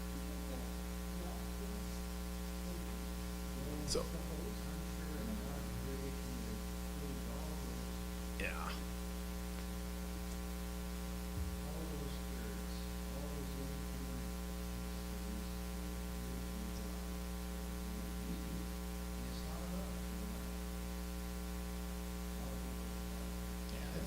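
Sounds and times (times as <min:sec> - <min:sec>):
faint voices: 0:00.0 - 0:08.9
electrical mains hum: 0:00.0 - 0:24.0
soft low thump: 0:11.3 - 0:11.6.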